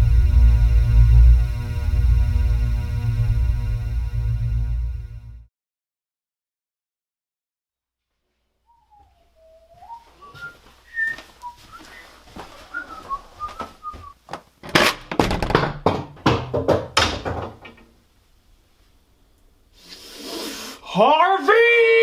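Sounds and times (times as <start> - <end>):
person whistling a tune: 8.7 - 14.2
loud knocks and clattering: 14.6 - 17.9
rising hiss: 19.7 - 20.9.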